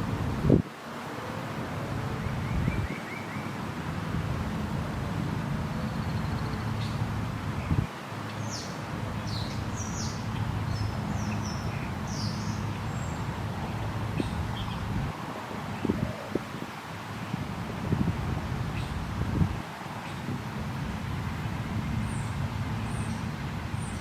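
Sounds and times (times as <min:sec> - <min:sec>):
small birds chirping: 0:05.8 - 0:15.0.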